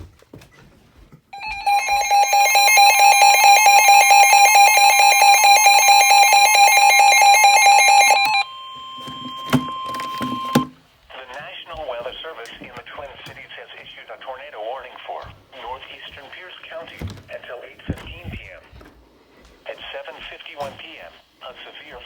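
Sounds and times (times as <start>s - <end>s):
rapidly pulsing electronic alarm: 1.4s - 10.7s
steady warning tone: 1.4s - 11.9s.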